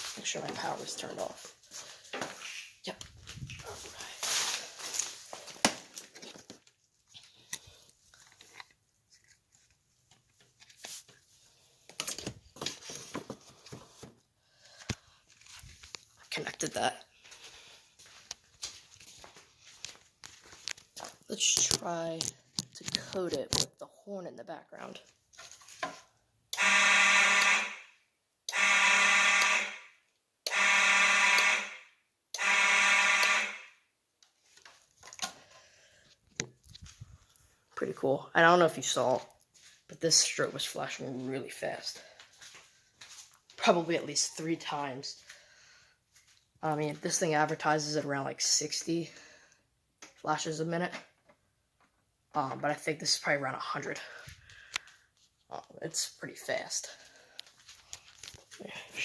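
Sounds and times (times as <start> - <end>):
hands handling wiring and plastic: 0.0 - 16.2, 18.0 - 23.8, 25.1 - 26.1, 34.2 - 37.8, 57.3 - 58.6
fire alarm horn blasts: 26.5 - 33.8.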